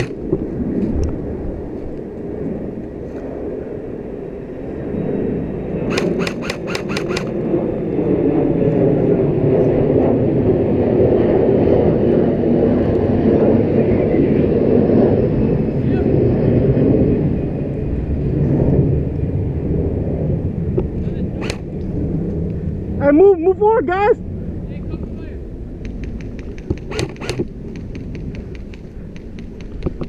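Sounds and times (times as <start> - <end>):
low rumble: 0.0 - 6.4, 7.1 - 30.0
airsoft gun shots: 5.9 - 7.4, 21.4 - 21.7, 26.8 - 27.4.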